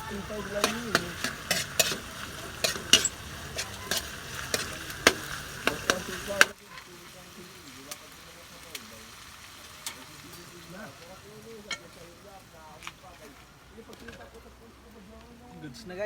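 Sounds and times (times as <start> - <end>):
utensil clinking against pan: 0.0 - 6.5
steady sizzle: 0.0 - 16.0.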